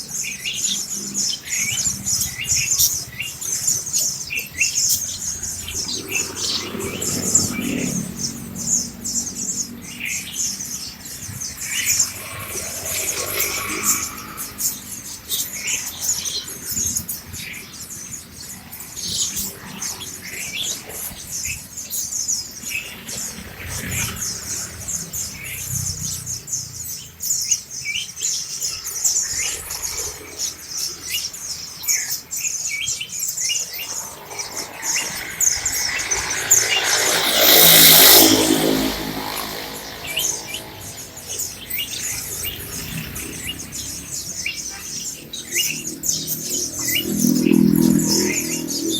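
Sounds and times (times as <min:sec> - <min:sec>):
small birds twittering: 0:00.0 - 0:48.9
louder swelling sound: 0:33.8 - 0:42.8.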